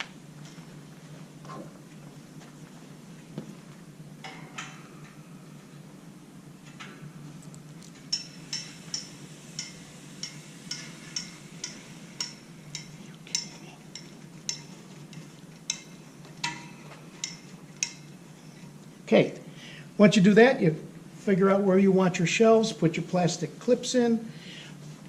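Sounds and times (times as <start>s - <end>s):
wire shelving parts clinking: 4.2s - 5.7s, 6.6s - 18.8s.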